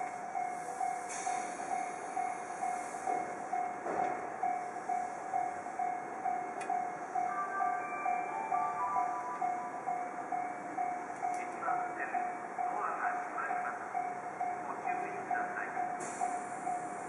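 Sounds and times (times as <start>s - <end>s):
train standing noise: 0.0s - 4.4s
repeating electronic bell tone: 4.4s - 11.4s
higher electronic chime: 6.8s - 11.4s.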